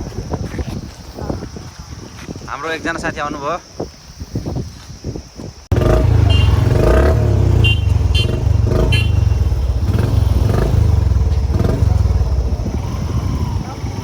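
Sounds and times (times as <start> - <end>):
motorcycle engine running: 5.7 - 14.0.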